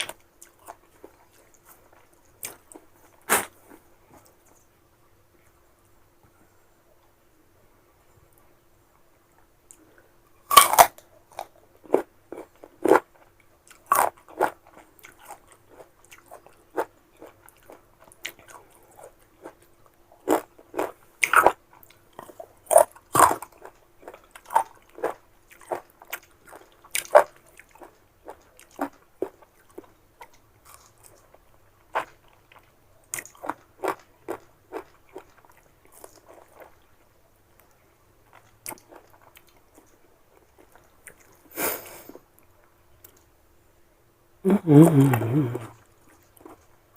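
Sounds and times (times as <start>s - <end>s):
crunchy chewing: 0.0s - 4.7s, 10.5s - 41.5s, 45.7s - 46.8s.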